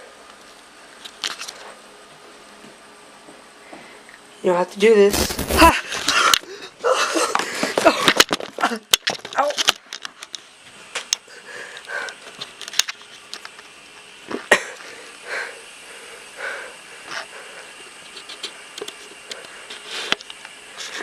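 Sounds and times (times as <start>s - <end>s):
person breathing hard and whimpering: 5.4s - 8.0s, 11.2s - 12.4s, 14.6s - 17.8s.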